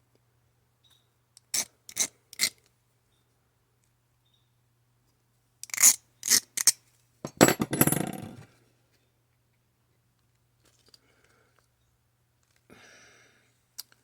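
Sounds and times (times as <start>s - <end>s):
metal parts clinking and scraping: 7.3s - 8.4s
rattling scrape of tools: 7.3s - 8.4s.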